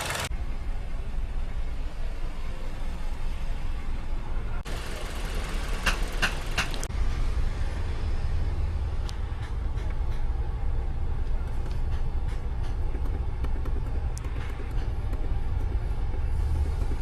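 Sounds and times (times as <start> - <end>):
car engine idling: 0.0 - 2.0, 4.6 - 6.9.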